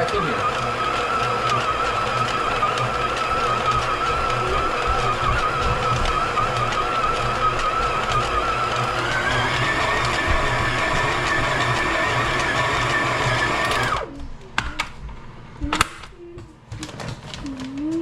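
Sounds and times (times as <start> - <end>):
stand mixer motor whining: 0.0 - 14.1.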